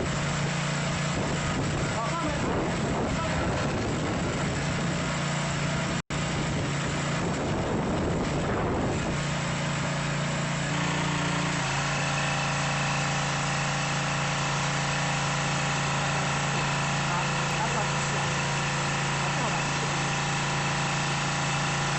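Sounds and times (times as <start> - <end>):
pressure washer engine running: 0.0 - 21.9.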